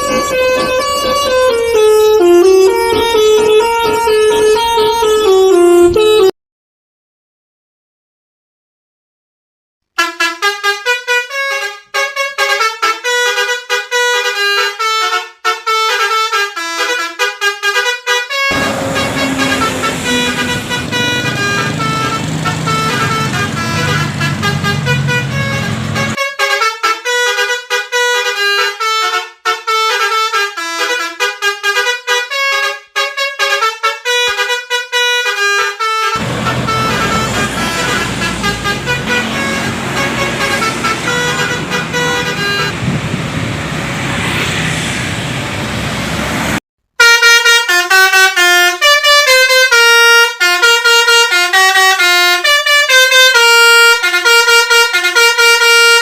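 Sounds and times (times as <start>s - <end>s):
engine rumbling: 0.0s - 6.2s, 18.5s - 26.2s, 36.2s - 46.6s
bus horn playing tunes: 0.0s - 6.3s, 10.0s - 43.2s, 47.0s - 56.0s
street noise: 0.0s - 6.3s, 18.5s - 26.2s, 36.1s - 46.6s.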